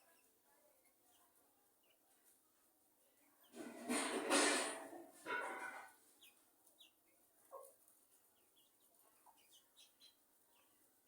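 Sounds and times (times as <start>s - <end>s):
chicks peeping: 5.8s - 10.9s.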